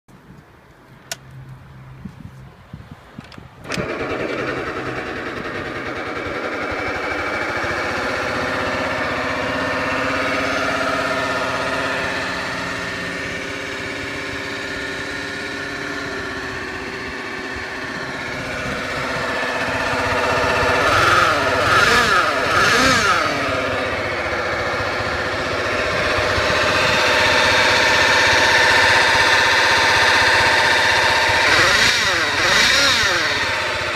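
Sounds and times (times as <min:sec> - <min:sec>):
starter clicks: 0:03.2 - 0:05.9
engine revving: 0:03.6 - 0:33.9
scooter engine running: 0:03.6 - 0:33.9.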